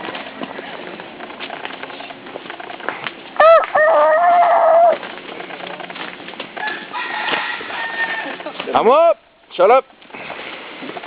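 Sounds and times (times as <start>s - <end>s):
rooster crowing: 3.4s - 5.0s, 6.6s - 8.5s.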